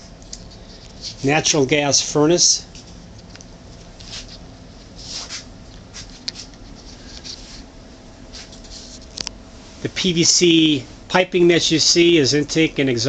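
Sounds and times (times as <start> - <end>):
low steady hum: 0.0 - 13.0
soft rustling and scraping: 0.2 - 1.6, 2.6 - 9.8.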